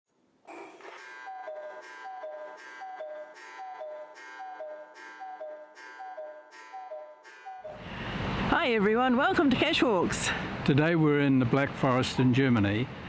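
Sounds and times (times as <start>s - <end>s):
cuckoo clock calling: 0.5s - 7.8s.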